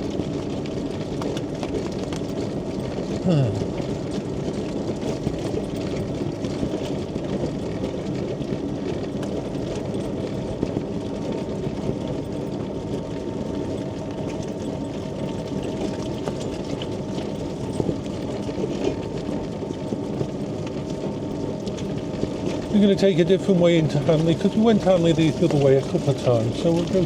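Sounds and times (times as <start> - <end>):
mobility scooter drive noise: 0.0 - 27.0
thin steady whine: 22.6 - 27.0.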